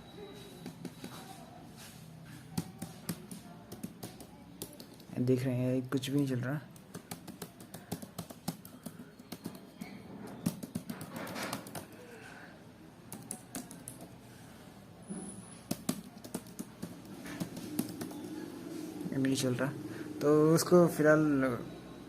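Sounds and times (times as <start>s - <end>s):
laptop keyboard keys clicking: 2.6s - 5.1s, 6.7s - 9.8s, 10.4s - 12.1s, 13.1s - 14.2s, 15.7s - 18.4s.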